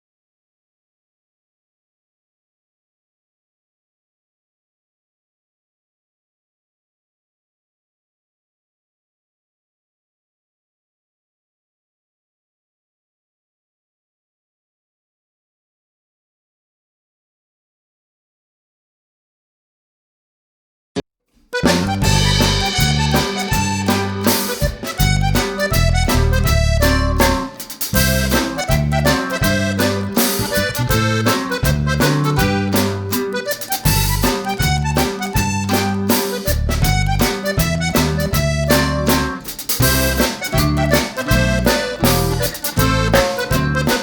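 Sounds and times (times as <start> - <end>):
music with heavy bass and drums: 21.6 - 44.0.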